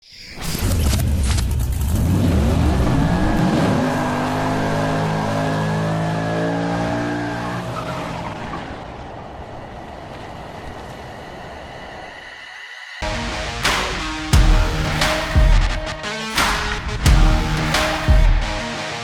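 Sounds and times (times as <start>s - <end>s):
motorcycle engine revving: 2.0s - 7.7s.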